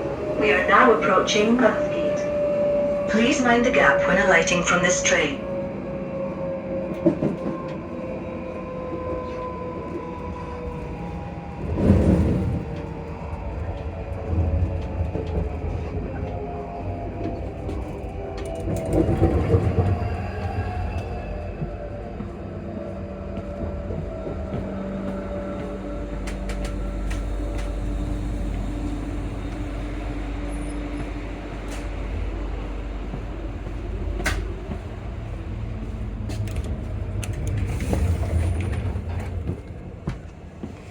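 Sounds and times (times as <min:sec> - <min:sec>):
train traction motors whining: 0:00.0 - 0:05.5
train rumble: 0:00.0 - 0:40.9.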